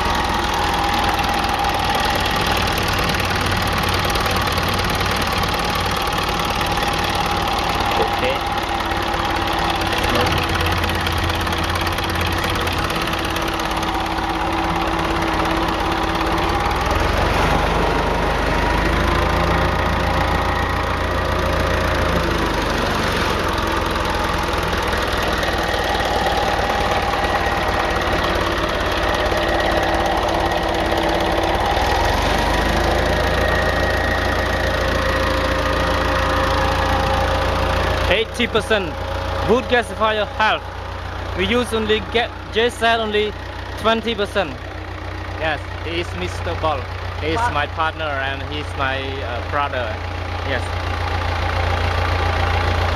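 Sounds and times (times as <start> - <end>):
diesel generator running: 0.0 - 52.9.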